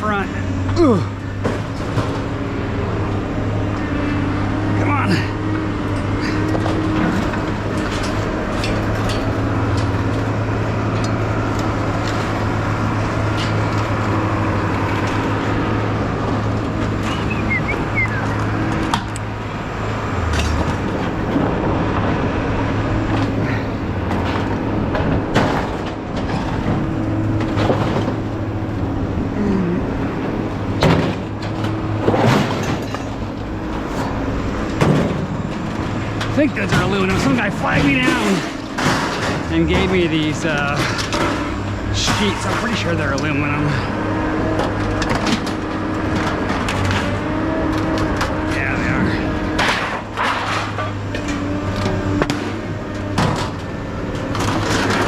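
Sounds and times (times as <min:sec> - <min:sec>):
car engine and road noise: 0:00.0 - 0:55.0
sharp knocks and rattles: 0:05.9 - 0:29.0, 0:30.2 - 0:43.6.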